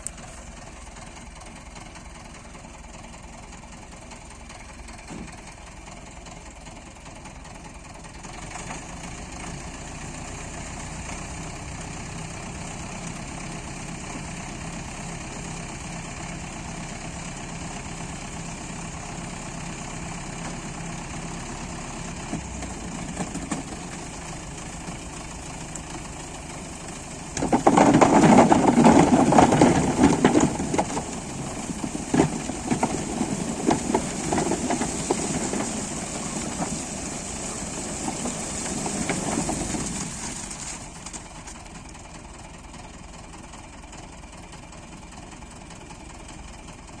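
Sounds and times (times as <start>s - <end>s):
harvester and tractor running: 0.0s - 47.0s.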